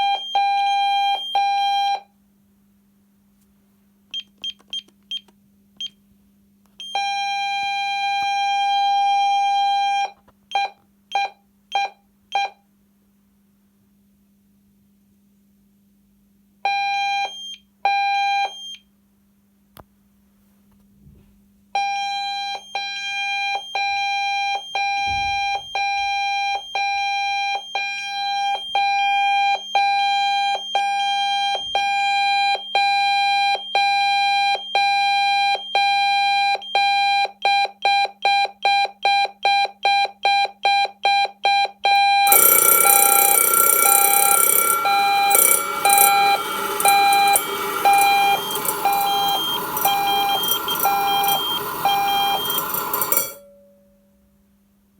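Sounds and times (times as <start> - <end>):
intruder alarm beeps: 42.0 - 53.4
shrill pulsing alarm tone: 42.0 - 53.4
alarm bell ringing: 42.0 - 53.7.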